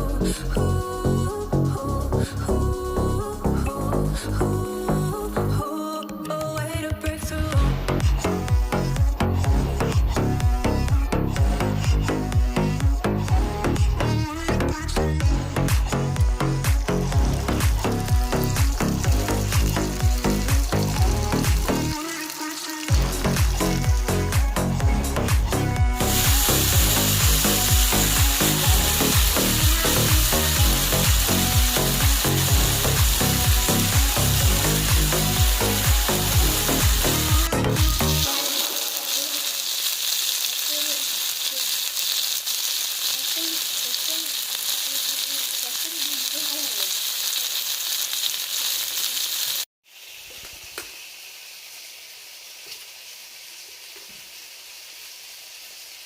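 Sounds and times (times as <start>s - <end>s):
background music with steady beat: 0.0s - 39.6s
food sizzling: 1.1s - 56.0s.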